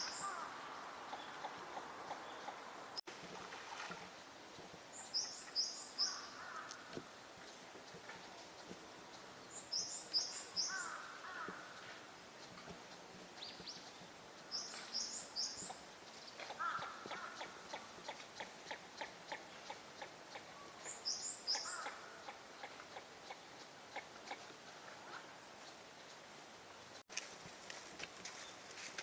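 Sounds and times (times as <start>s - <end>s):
bird chirping: 0.0s - 2.8s, 4.1s - 24.4s.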